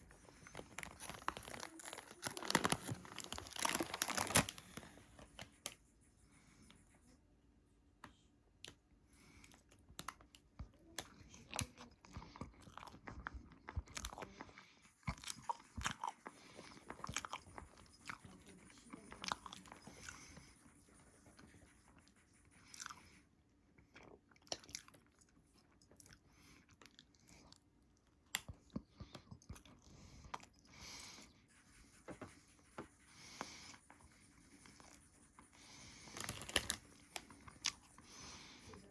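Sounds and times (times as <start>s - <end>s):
person chewing crunchy food: 12.1s - 18.2s, 22.7s - 23.0s, 23.9s - 25.2s.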